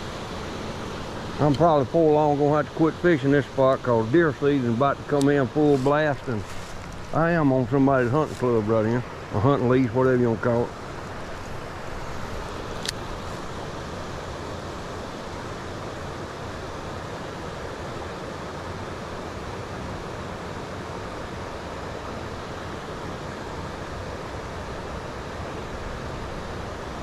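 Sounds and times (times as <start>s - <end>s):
rushing wind or water: 0.0s - 27.0s.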